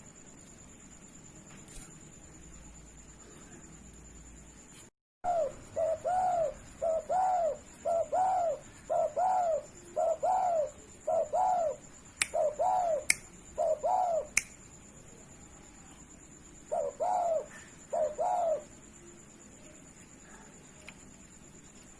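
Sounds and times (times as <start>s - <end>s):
dove cooing: 5.2s - 14.4s, 16.7s - 18.7s
sharp clicks: 14.4s - 14.6s.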